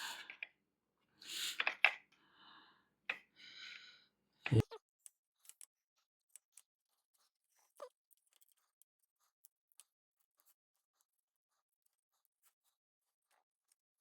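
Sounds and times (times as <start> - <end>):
small scrapes and clicks: 4.8 - 14.0.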